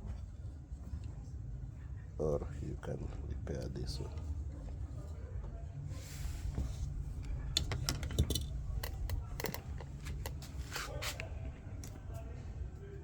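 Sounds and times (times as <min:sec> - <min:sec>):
low background rumble: 0:00.0 - 0:13.0
plastic parts clicking and rattling: 0:07.5 - 0:10.6.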